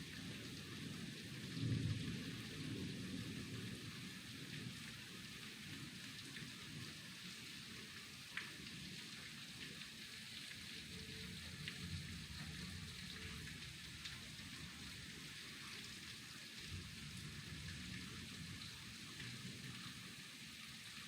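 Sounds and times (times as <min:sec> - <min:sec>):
heavy rain pouring off roof: 0:00.0 - 0:21.0.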